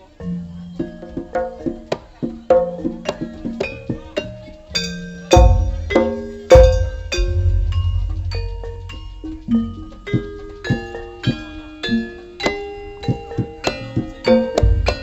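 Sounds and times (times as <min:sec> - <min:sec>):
metal keyed percussion notes: 0:04.8 - 0:15.0
heavy deep strikes: 0:05.4 - 0:10.4.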